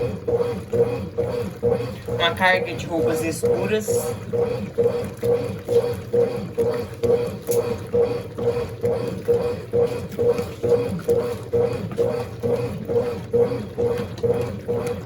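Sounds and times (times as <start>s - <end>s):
agitator swishing water: 0.0s - 15.0s
washing machine motor humming: 0.0s - 15.0s.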